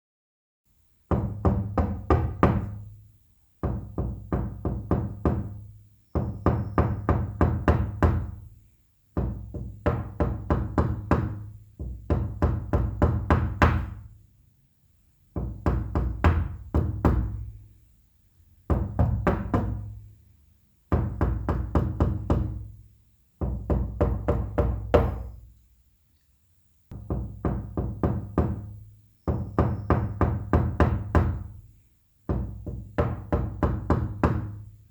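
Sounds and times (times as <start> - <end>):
knocking on wooden door: 1.1 - 2.9, 3.6 - 8.5, 9.2 - 14.1, 15.4 - 17.5, 18.7 - 20.0, 20.9 - 22.7, 23.4 - 25.4, 26.9 - 31.6, 32.3 - 34.7.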